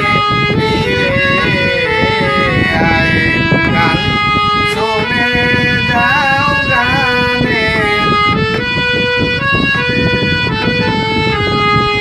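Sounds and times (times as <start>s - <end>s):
wavering singing voice: 0.0s - 8.6s
harmonium held notes: 0.0s - 12.0s.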